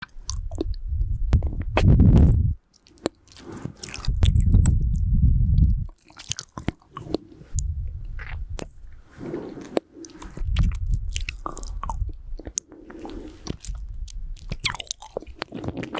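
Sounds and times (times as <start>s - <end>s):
hard candy crunching: 2.7s - 5.1s, 5.9s - 8.8s, 9.6s - 15.9s.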